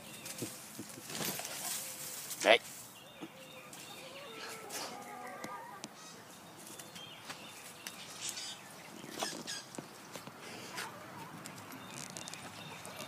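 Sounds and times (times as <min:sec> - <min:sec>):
faint chicken calls: 0:03.2 - 0:06.7, 0:10.4 - 0:13.0.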